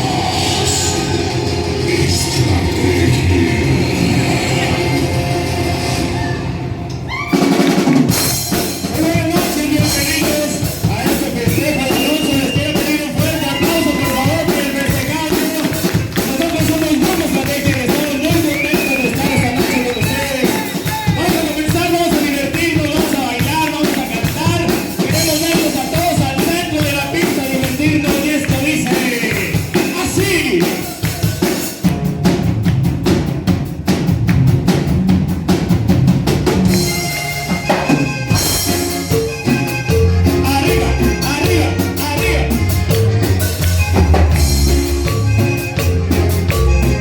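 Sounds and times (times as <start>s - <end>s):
drums and percussion: 0.0s - 47.0s
person singing: 8.6s - 31.7s, 40.1s - 43.2s
held instrument notes: 36.6s - 47.0s.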